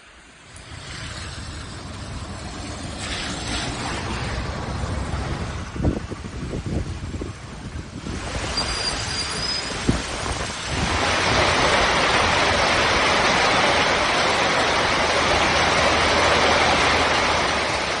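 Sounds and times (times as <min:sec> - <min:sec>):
heavy rain falling: 0:00.0 - 0:18.0.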